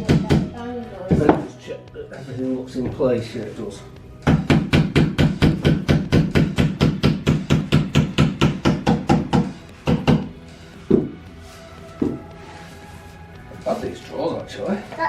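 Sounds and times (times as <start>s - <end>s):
hammer knocking on wood: 4.2s - 10.3s.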